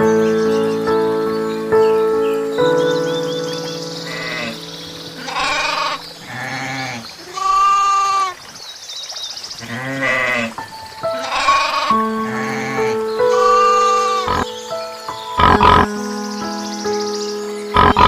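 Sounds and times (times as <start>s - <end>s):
background music with held notes: 0.0s - 7.0s, 10.1s - 18.0s
short wavering animal calls: 5.2s - 8.4s, 11.2s - 14.5s, 15.4s - 15.8s, 17.8s - 18.0s.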